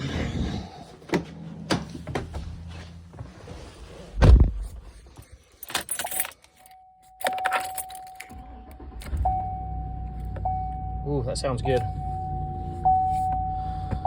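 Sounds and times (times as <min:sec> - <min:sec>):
car engine starting and running: 0:00.0 - 0:06.6, 0:07.2 - 0:14.0
loud thump: 0:04.2 - 0:04.7
keys jangling: 0:05.5 - 0:08.4
single-tone warning chime: 0:09.3 - 0:14.0.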